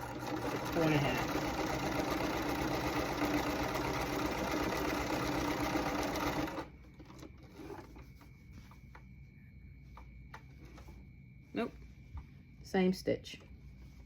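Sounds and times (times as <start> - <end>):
sewing machine running: 0.0 - 7.7.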